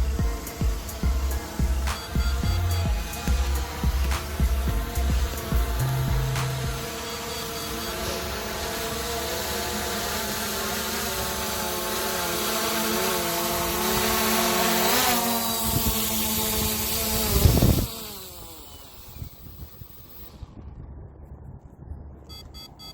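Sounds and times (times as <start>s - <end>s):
loud low thud: 0.0s - 6.8s
drone motors whining: 0.0s - 21.1s.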